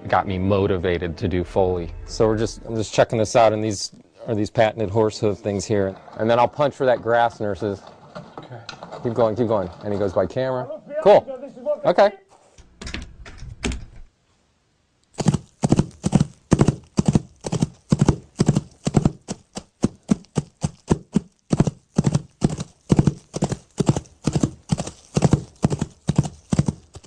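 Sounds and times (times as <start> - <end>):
horse hoofbeats clip-clop: 15.2 - 27.0.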